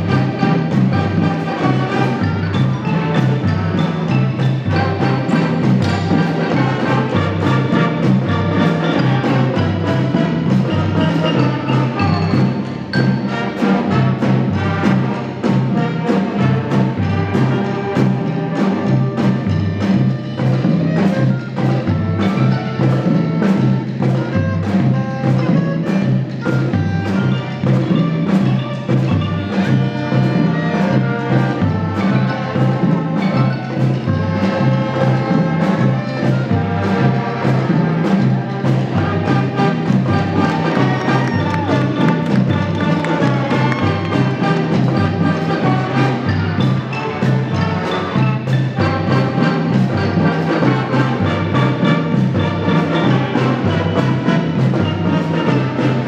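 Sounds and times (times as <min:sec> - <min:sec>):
music with steady beat: 0:00.0 - 0:56.0.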